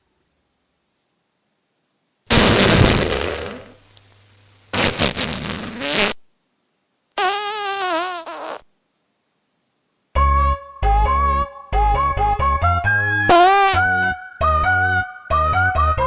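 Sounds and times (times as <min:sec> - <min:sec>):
fart sound effects: 0:02.3 - 0:03.8, 0:04.8 - 0:06.2, 0:07.2 - 0:08.7, 0:12.8 - 0:14.0
wavering squeak: 0:12.7 - 0:14.3.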